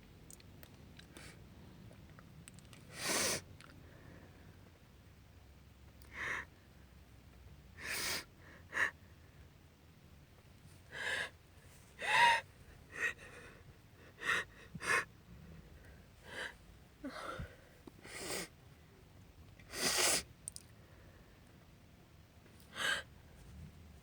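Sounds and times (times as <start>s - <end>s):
woman sniffling and gasping: 7.8s - 9.0s, 10.9s - 15.1s, 16.2s - 18.6s, 19.7s - 20.3s, 22.7s - 23.1s.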